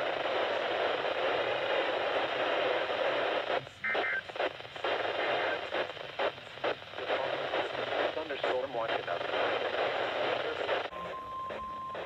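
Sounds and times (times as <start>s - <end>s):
radio static hiss: 0.0s - 12.0s
short high beep: 10.9s - 12.0s.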